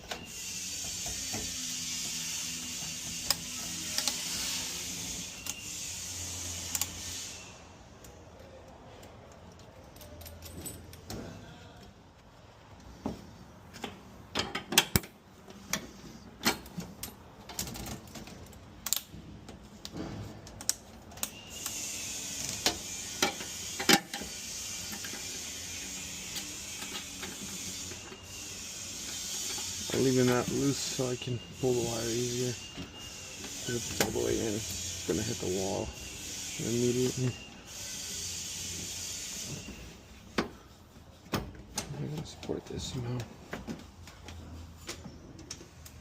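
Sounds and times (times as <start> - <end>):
small metal parts clinking: 9.4 - 11.1
steady hiss: 21.5 - 40.8.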